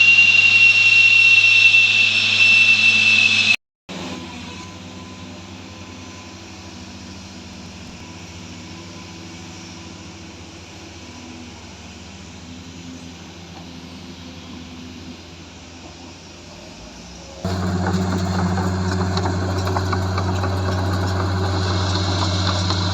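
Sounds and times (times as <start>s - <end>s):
diesel engine running: 3.9s - 10.2s, 16.8s - 22.9s.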